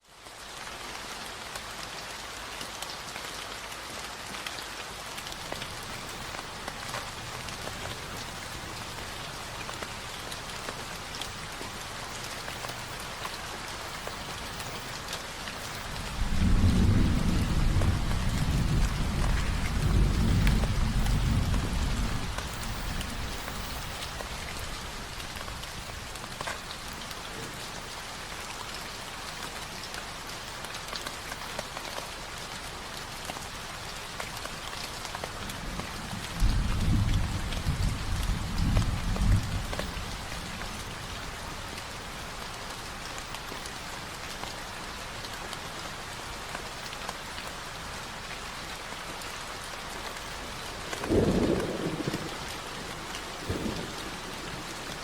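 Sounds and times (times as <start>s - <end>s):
rain falling steadily: 0.0s - 55.0s
low rumble of thunder: 5.2s - 28.0s, 34.4s - 44.5s, 50.4s - 55.0s
rain drop ticks: 5.2s - 55.0s.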